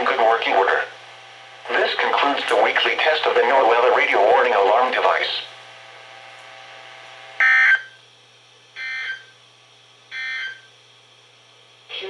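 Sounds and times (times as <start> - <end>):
digital data tone bursts: 8.8 - 9.3, 10.1 - 10.7.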